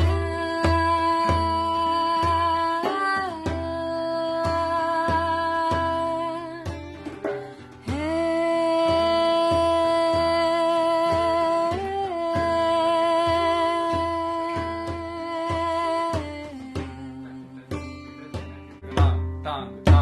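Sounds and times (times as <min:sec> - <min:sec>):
steady low drum beat: 0:14.1 - 0:20.0.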